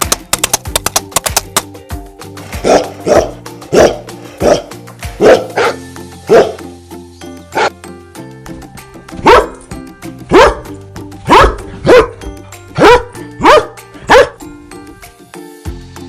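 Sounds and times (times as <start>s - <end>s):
background music with held notes: 0.0s - 16.0s
dog barking: 2.6s - 6.6s, 9.2s - 9.6s, 10.3s - 10.7s, 11.3s - 14.4s.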